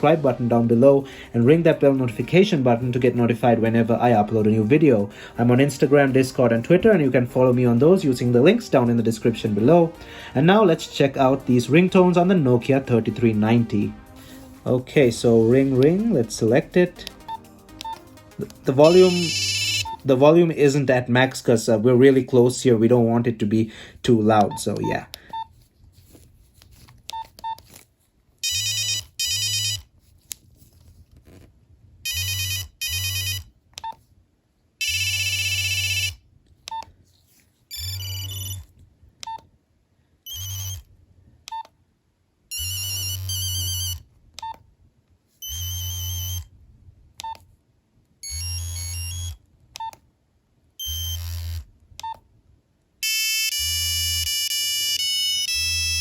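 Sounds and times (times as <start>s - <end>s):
beeping ringtone melody: 11.4s - 20.2s, 28.4s - 29.8s, 32.1s - 33.4s, 34.8s - 36.2s, 37.7s - 38.6s, 40.3s - 40.8s, 42.5s - 44.0s, 45.4s - 46.4s, 48.2s - 49.4s, 50.8s - 51.6s, 53.0s - 56.0s.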